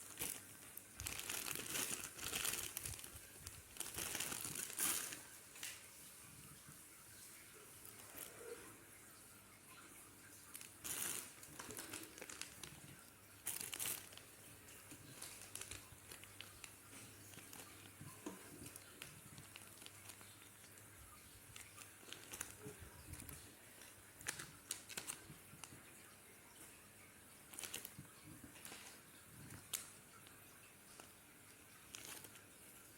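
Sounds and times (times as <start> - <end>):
plastic bags crinkling: 0.0 - 5.9, 7.8 - 8.6, 10.5 - 25.9, 27.5 - 30.2, 31.8 - 32.5.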